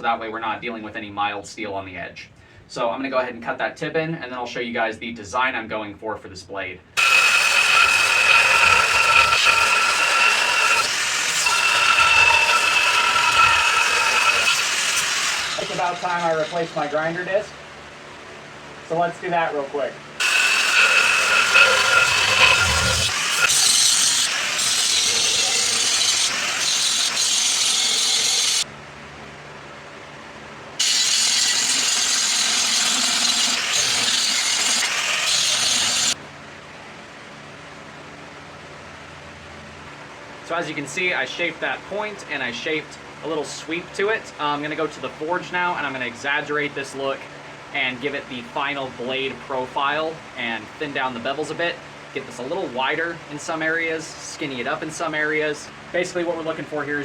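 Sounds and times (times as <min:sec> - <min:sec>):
angle grinder cutting steel: 0:07.0 - 0:17.4, 0:20.2 - 0:28.7, 0:30.8 - 0:36.2.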